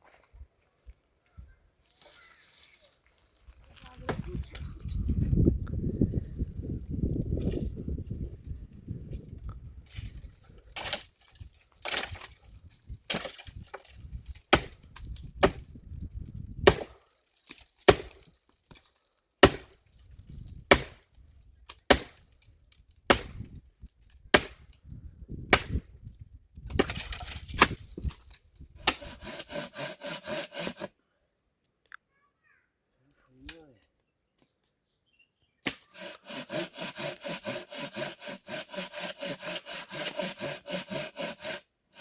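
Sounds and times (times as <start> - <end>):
wood splintering: 10.8 - 15.6, 16.7 - 19.8, 20.7 - 21.0, 21.7 - 22.4, 24.3 - 24.7, 26.7 - 30.9, 35.6 - 42.0
axe chopping wood: 13.1 - 13.8, 14.5 - 15.6, 16.6 - 18.2, 19.4 - 19.8, 20.7 - 21.0, 21.9 - 22.2, 23.1 - 23.5, 24.3 - 24.7, 25.5 - 25.8, 26.7 - 27.8, 28.8 - 30.9, 35.6 - 42.0.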